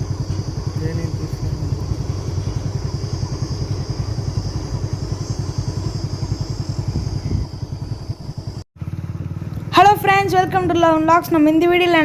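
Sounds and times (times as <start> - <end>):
high whine: 0.0 - 8.6
engine idling: 0.0 - 12.0.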